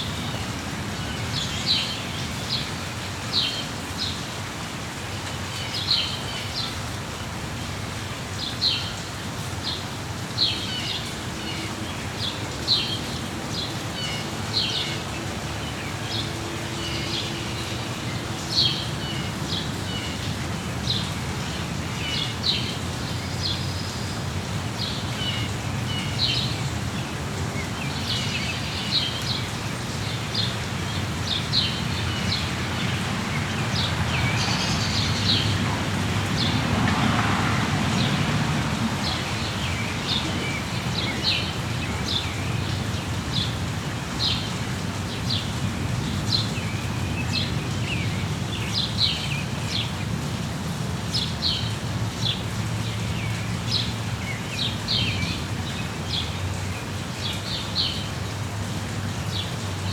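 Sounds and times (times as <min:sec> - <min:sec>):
rain hissing: 0:00.0 - 0:59.9
songbirds chirping and trilling: 0:08.4 - 0:59.9.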